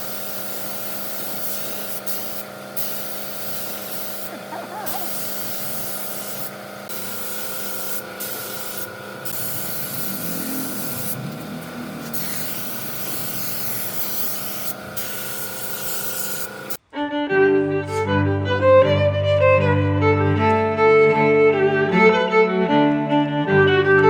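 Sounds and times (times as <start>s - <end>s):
spray gun hissing: 0.0s - 16.8s
motor hum: 0.2s - 16.8s.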